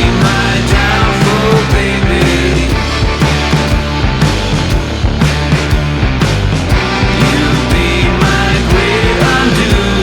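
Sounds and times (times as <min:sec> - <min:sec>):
bass guitar: 0:00.0 - 0:10.0
distorted guitar: 0:00.0 - 0:10.0
drum beat: 0:00.0 - 0:10.0.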